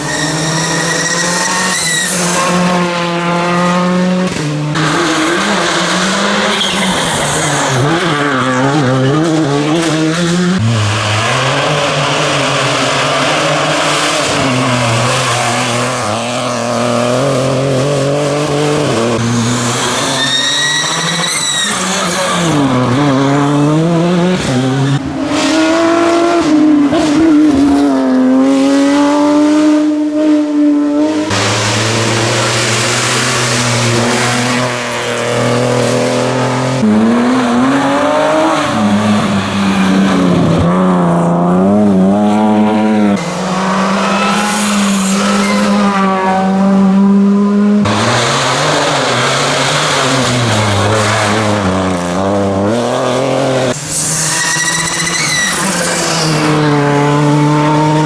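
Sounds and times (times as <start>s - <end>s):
tyres squealing: 0.0s - 3.0s, 19.2s - 25.3s, 48.9s - 56.9s
rally car engines revving: 0.0s - 58.0s.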